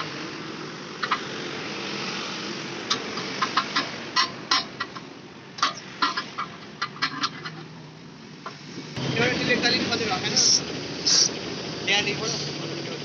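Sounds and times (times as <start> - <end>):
steady background hiss: 0.0 - 13.0.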